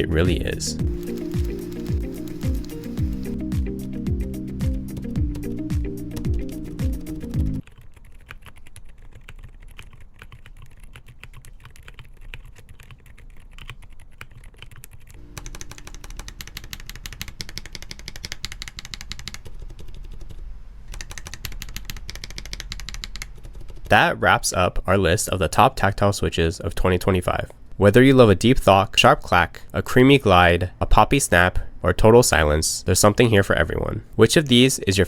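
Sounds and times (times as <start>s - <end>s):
background music: 0.0s - 7.6s, 15.2s - 16.8s
fast typing on mechanical keyboard: 0.8s - 3.4s, 7.6s - 23.9s.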